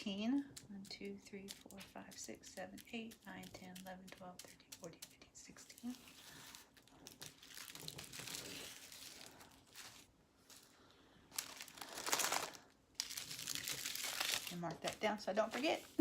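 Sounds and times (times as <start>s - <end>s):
plastic bags crinkling: 5.8s - 16.0s.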